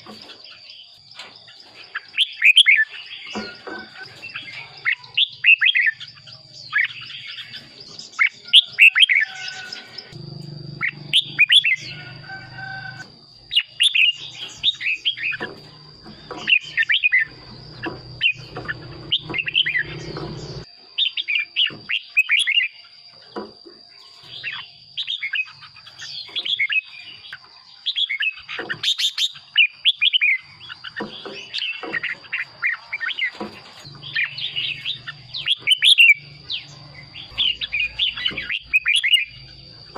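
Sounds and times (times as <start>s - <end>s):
steady high whine: 9.6s - 20.7s
low hum: 10.0s - 13.5s, 14.1s - 20.7s.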